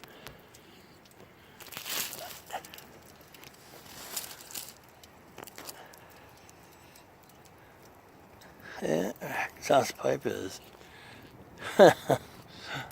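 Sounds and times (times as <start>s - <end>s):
rustling and crunching handling: 0.0s - 8.6s.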